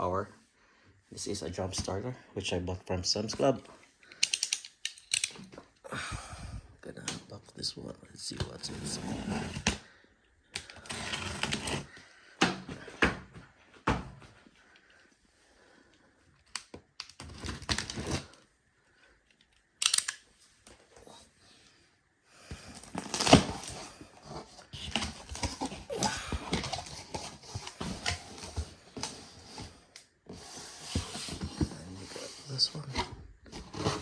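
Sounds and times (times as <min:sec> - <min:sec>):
box rustling and scraping: 0:08.5 - 0:09.8, 0:10.8 - 0:14.3, 0:22.6 - 0:34.0.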